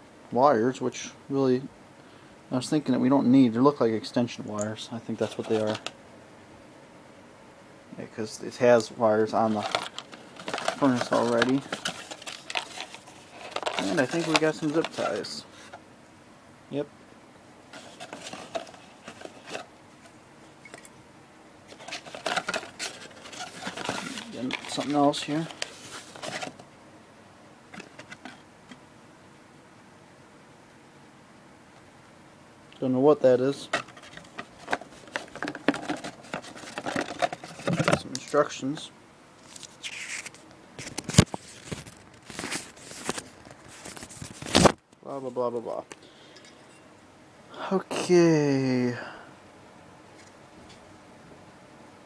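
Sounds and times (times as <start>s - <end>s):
packaging crinkling and rustling: 5.1s - 6.0s, 9.2s - 15.8s, 17.8s - 19.7s, 21.7s - 26.7s, 33.6s - 38.6s, 39.4s - 44.8s.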